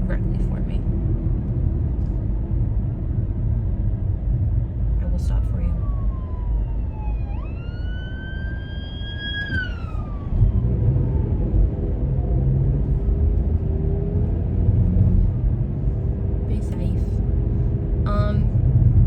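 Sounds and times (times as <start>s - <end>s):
car engine and road noise: 0.0s - 19.0s
emergency vehicle siren wail: 5.3s - 13.3s.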